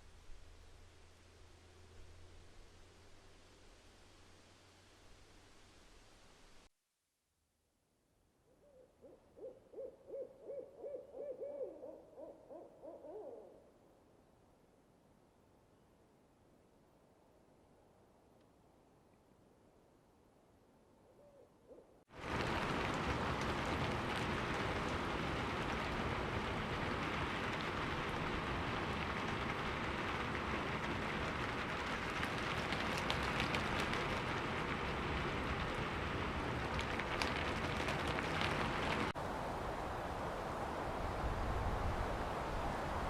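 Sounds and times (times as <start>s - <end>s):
heavy rain: 22.1s - 43.0s.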